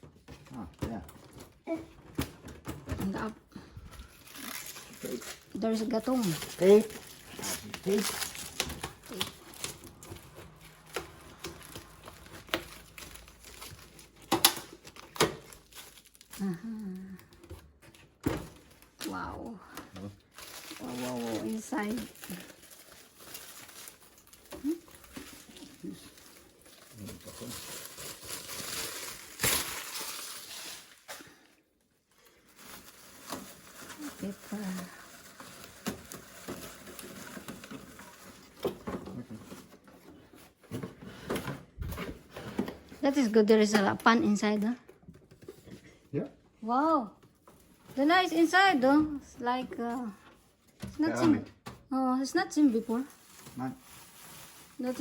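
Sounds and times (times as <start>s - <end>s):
rustling and handling noises: 0.0s - 55.0s
packaging crinkling and tearing: 3.9s - 40.6s, 52.6s - 55.0s.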